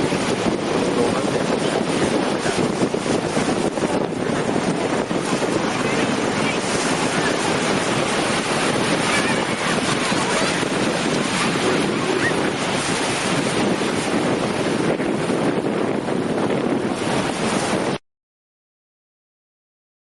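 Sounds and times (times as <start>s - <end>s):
sea waves washing on beach: 0.0s - 18.0s
wind buffeting microphone: 0.0s - 18.0s.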